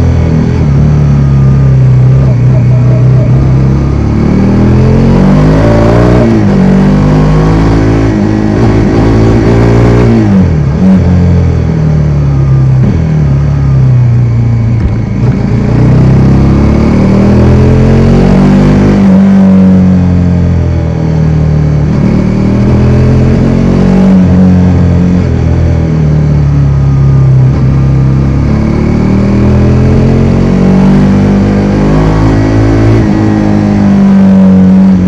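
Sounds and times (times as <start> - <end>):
motorcycle engine accelerating: 0.0 - 35.0.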